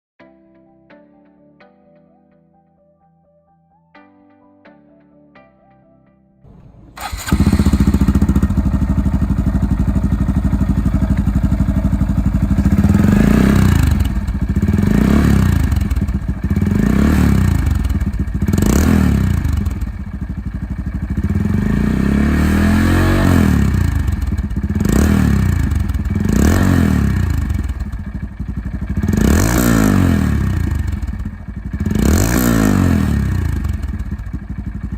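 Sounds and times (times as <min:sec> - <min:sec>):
motorcycle engine idling: 0:06.5 - 0:22.0, 0:23.6 - 0:34.9
motorcycle engine throttle blips: 0:06.5 - 0:34.9.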